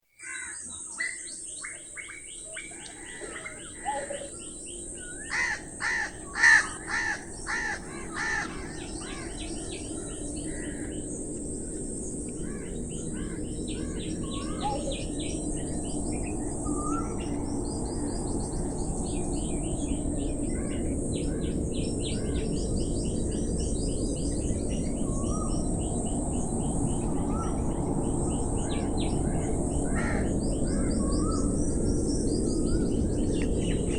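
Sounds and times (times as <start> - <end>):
loud cawing calls: 0.2 - 0.9, 2.8 - 4.5, 5.1 - 11.0, 29.2 - 31.0.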